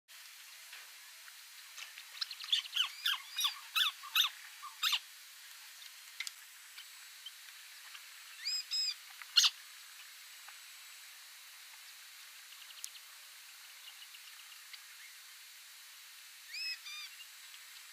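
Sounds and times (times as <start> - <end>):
crake calling: 2.2 - 5.1, 8.4 - 9.6, 16.4 - 17.3.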